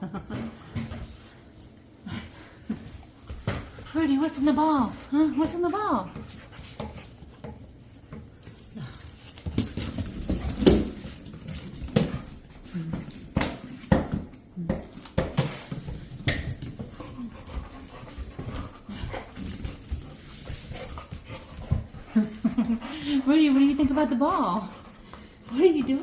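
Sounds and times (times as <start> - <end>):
electronic mouse squeaking: 0.2 - 5.1, 7.8 - 26.0
toy ball knocking and rolling: 3.2 - 5.0, 6.9 - 21.9.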